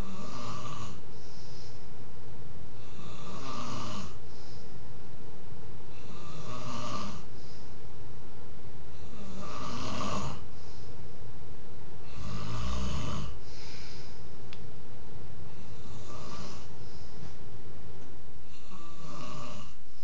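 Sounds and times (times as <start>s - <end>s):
man snoring: 0.0s - 1.6s, 2.8s - 4.2s, 5.9s - 7.3s, 8.9s - 10.6s, 12.0s - 14.1s, 15.5s - 16.8s, 18.4s - 19.8s.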